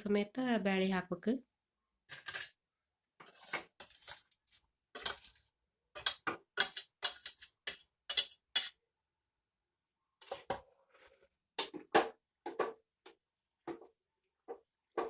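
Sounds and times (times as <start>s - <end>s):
metal spoon scraping pot: 3.2s - 4.3s, 6.0s - 8.8s.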